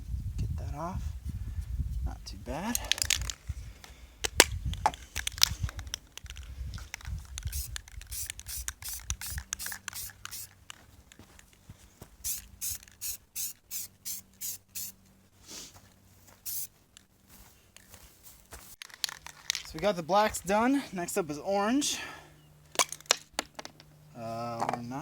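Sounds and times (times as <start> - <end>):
spray can hissing in bursts: 7.4 - 10.6, 12.2 - 15.6, 16.4 - 16.7.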